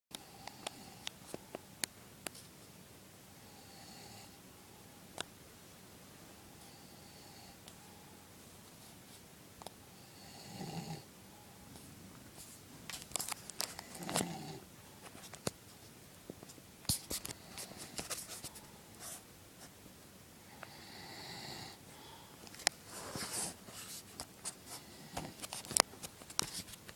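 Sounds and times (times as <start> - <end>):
man snoring: 3.4 - 4.4, 6.7 - 7.6, 10.0 - 11.1, 13.9 - 14.6, 20.6 - 21.8.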